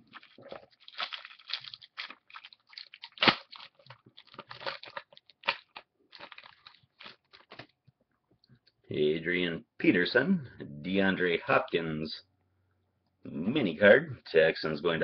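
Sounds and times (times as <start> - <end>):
foil wrapper crinkling and tearing: 0.0 - 7.8.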